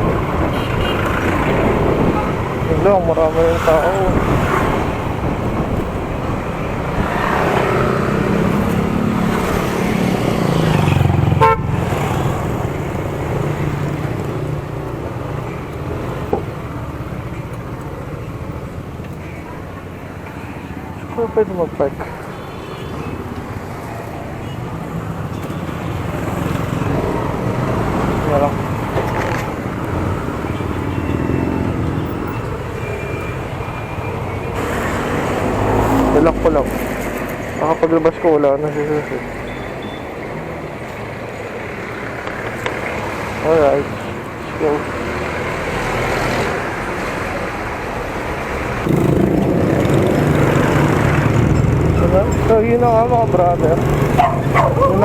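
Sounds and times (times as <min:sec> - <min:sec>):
road traffic: 0:00.0 - 0:55.0
street noise: 0:00.0 - 0:55.0
motorcycle engine: 0:04.4 - 0:14.8, 0:48.8 - 0:55.0
vehicle horn beep: 0:11.4 - 0:11.8, 0:39.5 - 0:40.1
vehicle engine rumbling: 0:23.2 - 0:55.0.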